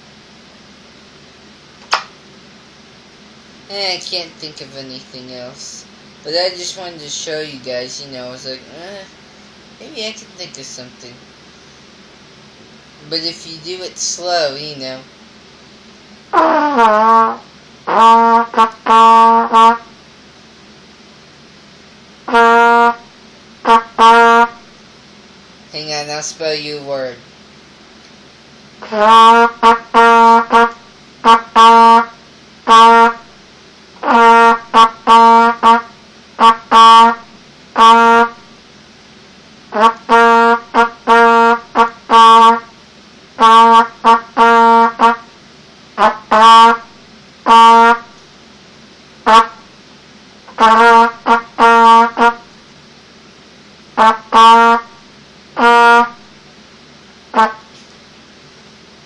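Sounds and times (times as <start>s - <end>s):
trumpet playing morse code: 16.4s - 19.9s, 22.3s - 24.6s, 28.8s - 33.2s, 34.0s - 38.4s, 39.7s - 42.7s, 43.4s - 45.2s, 46.0s - 48.1s, 49.2s - 49.6s, 50.6s - 52.4s, 54.0s - 55.0s, 55.6s - 56.2s, 57.4s - 57.7s.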